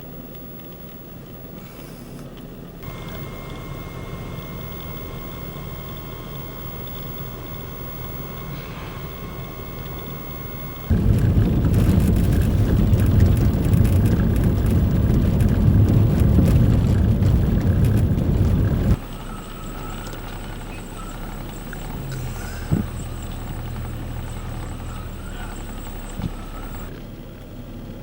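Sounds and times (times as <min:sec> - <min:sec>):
faint steady hum: 0:00.0 - 0:28.0
wind buffeting microphone: 0:10.8 - 0:19.0.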